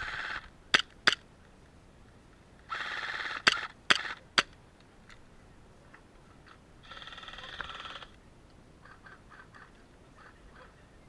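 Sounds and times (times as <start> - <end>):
airsoft gun full-auto bursts: 2.7 - 4.5
airsoft gun single shots: 3.4 - 4.5.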